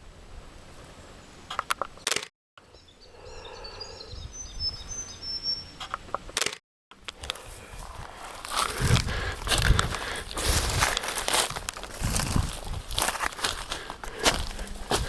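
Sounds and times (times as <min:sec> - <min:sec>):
faint outdoor background: 0:00.0 - 0:15.0
small bird chirping: 0:02.7 - 0:06.1.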